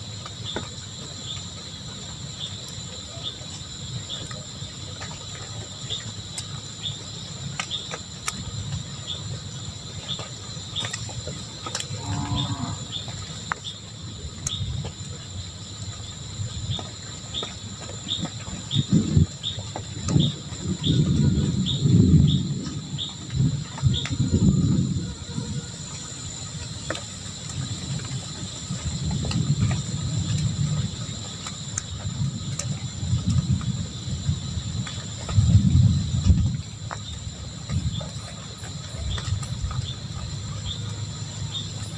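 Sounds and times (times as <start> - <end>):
insects chirring: 0.0 - 41.9
low rumbling: 11.4 - 13.3.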